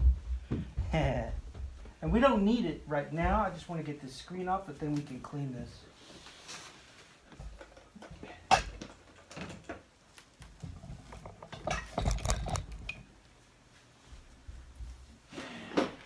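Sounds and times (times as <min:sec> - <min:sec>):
handling clicks and knocks: 0:07.4 - 0:13.1.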